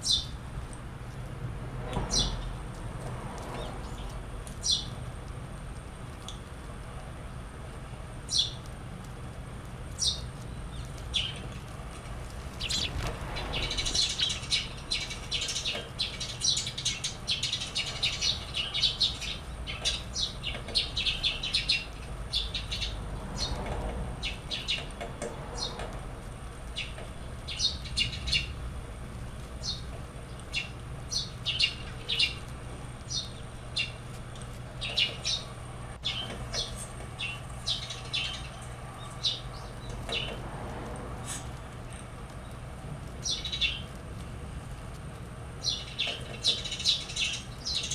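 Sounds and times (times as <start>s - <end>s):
steady low hum: 0.0s - 47.9s
small bird chirping: 3.6s - 5.0s, 8.3s - 8.6s, 9.9s - 11.7s, 12.5s - 23.6s, 24.2s - 25.0s, 26.7s - 28.6s, 29.6s - 32.4s, 33.1s - 34.0s, 34.8s - 40.4s, 45.6s - 47.9s.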